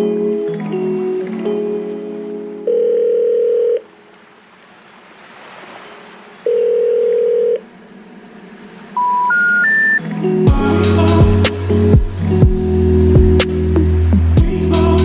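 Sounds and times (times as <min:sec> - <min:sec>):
low ringback tone: 0:02.7 - 0:03.9, 0:06.5 - 0:07.6, 0:08.9 - 0:10.0
rising three-note beeps: 0:09.0 - 0:10.0.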